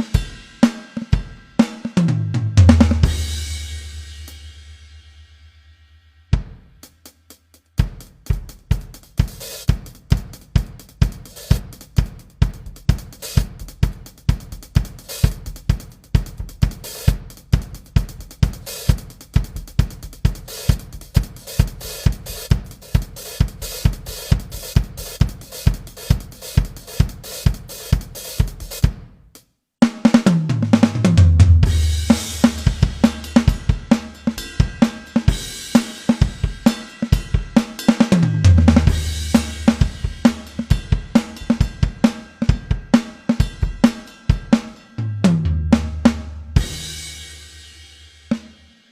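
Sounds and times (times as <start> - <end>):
tom drum fill: 0.0 - 4.9, 29.8 - 48.5
drum kit beat: 0.0 - 5.2, 6.2 - 48.9
cymbal crashes: 31.6 - 44.8.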